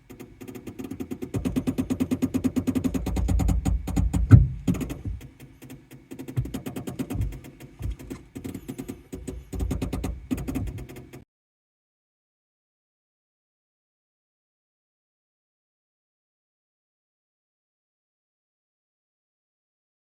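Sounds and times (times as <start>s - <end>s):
rapid clicking from car brakes: 0.0s - 11.2s
heavy knock: 3.0s - 5.2s.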